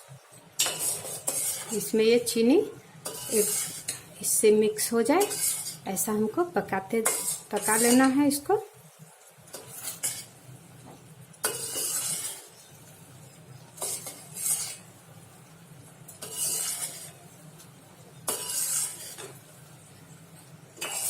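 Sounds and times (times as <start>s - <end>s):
spoon scraping a pan: 0.6s - 2.4s, 3.0s - 6.3s, 6.9s - 8.4s, 9.5s - 10.4s, 11.4s - 15.0s, 16.1s - 17.4s, 18.1s - 19.4s, 20.7s - 21.0s.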